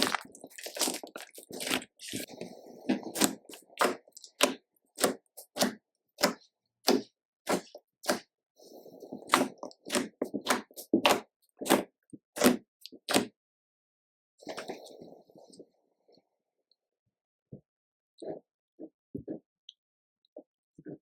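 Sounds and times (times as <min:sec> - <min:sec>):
slime squishing by hand: 0:00.0 - 0:08.3, 0:09.1 - 0:13.3.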